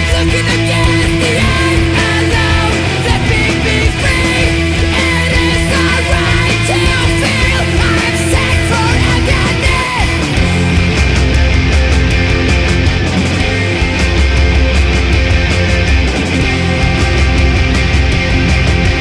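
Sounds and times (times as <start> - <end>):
bass: 0.0 - 19.0
distorted electric guitars: 0.0 - 19.0
drums: 0.0 - 19.0
yelled vocals: 0.0 - 19.0.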